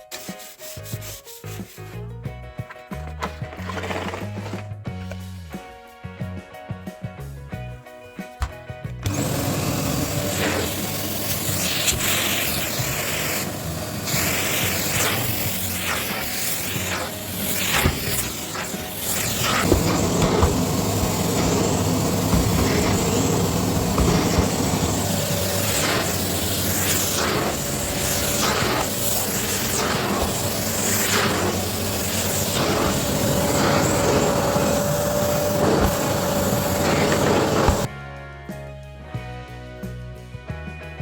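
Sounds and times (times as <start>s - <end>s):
vacuum cleaner running: 3.2s - 4.6s, 9.0s - 37.9s.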